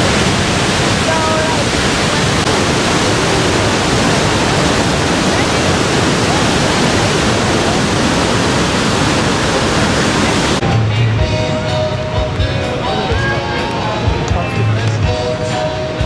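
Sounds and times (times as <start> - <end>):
waterfall rushing: 0.0 - 14.3.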